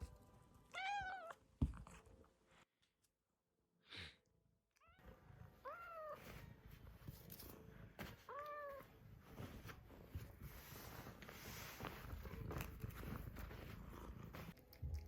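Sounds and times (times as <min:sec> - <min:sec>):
cat meowing: 0:00.7 - 0:01.4, 0:04.8 - 0:06.2
cat chewing with soft clicks: 0:13.8 - 0:15.0.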